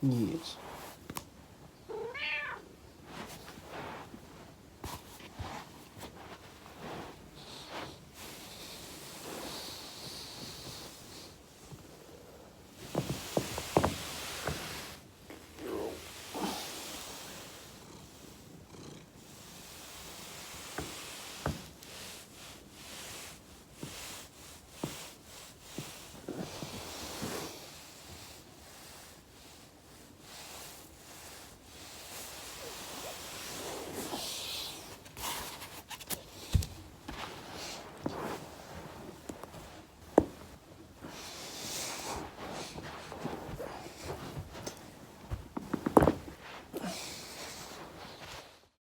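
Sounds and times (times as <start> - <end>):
foam roller rubbing: 36.5 - 48.6.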